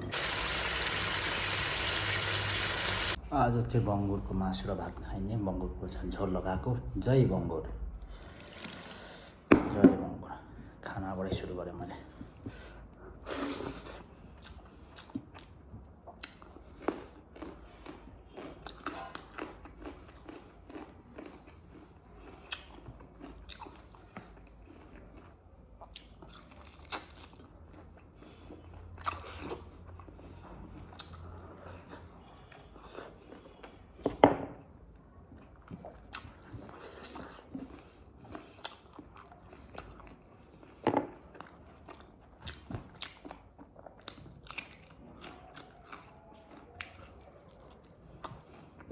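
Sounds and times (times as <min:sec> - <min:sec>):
person chewing: 0:13.3 - 0:32.0, 0:35.3 - 0:48.9.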